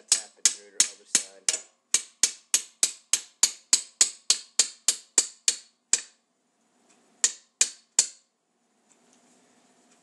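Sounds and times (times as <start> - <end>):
hammer tapping metal spindle: 0.0 - 6.2, 7.2 - 8.3.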